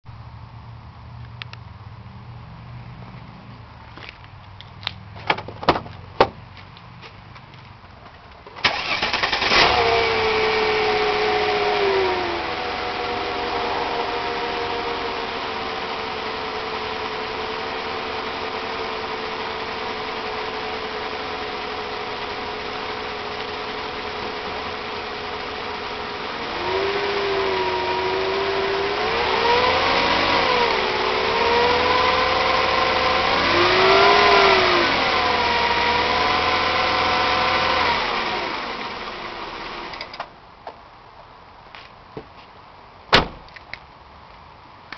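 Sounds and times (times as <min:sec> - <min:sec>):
misfiring car engine revving: 0:08.6 - 0:40.0
sharp knock: 0:43.1 - 0:43.5.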